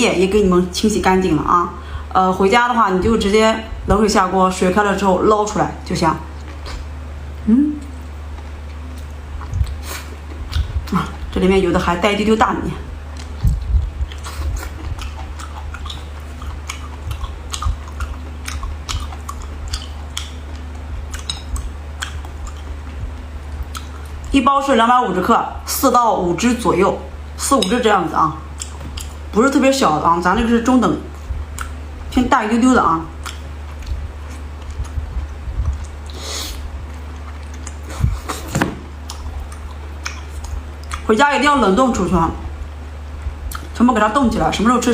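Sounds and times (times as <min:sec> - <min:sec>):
steady low hum: 0:00.0 - 0:44.9
wet chewing mouth clicks: 0:13.1 - 0:24.3, 0:28.6 - 0:29.2, 0:31.5 - 0:31.8, 0:33.2 - 0:41.1, 0:43.4 - 0:43.7.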